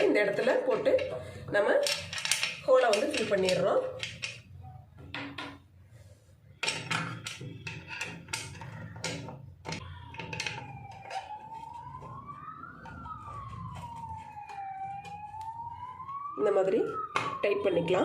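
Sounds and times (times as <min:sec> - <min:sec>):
siren wailing: 0:00.0 - 0:05.1, 0:07.0 - 0:18.0.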